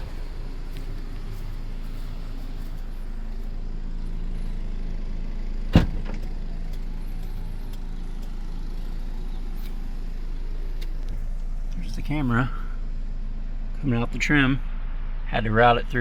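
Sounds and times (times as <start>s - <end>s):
car door thump: 0.0s - 1.5s, 5.7s - 6.3s
car engine idling: 0.0s - 16.0s.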